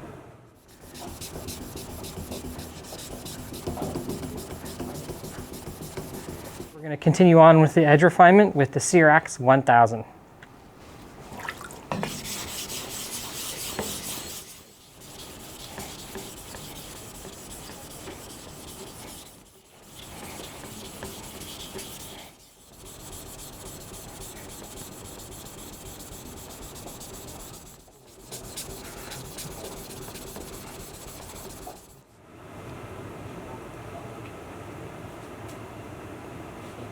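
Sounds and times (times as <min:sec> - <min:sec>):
knife scraping on whetstone: 0:00.7 - 0:06.8, 0:10.8 - 0:32.0.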